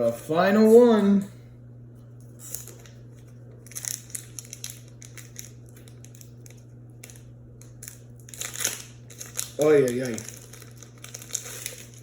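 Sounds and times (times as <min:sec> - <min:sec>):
low electrical hum: 0:00.0 - 0:12.0
foil pack crinkling: 0:02.4 - 0:12.0.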